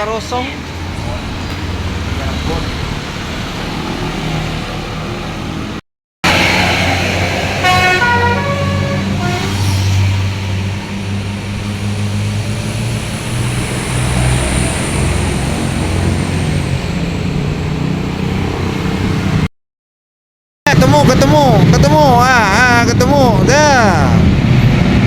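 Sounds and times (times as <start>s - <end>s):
bus engine running: 0.0s - 19.5s
bus horn playing stepped notes: 7.6s - 9.8s.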